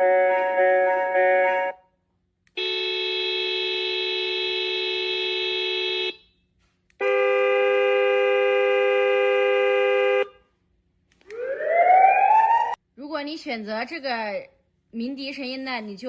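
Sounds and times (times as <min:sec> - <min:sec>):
electronic car horn blasts: 0:02.5 - 0:10.5.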